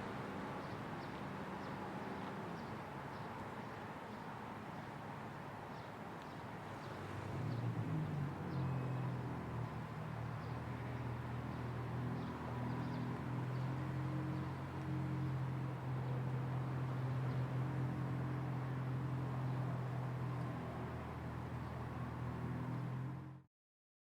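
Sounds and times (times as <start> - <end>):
traffic hum: 6.7 - 23.4.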